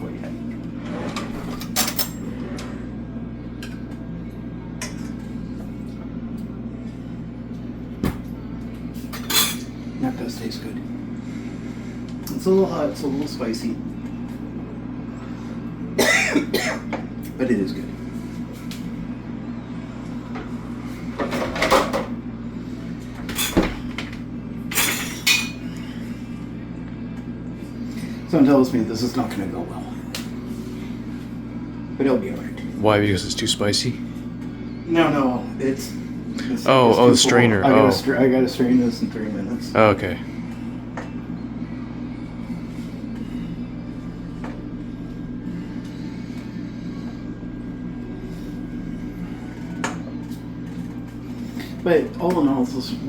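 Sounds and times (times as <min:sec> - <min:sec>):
steady low hum: 0:00.0 - 0:53.0
utensils clinking on pots: 0:09.1 - 0:09.7, 0:24.7 - 0:25.6.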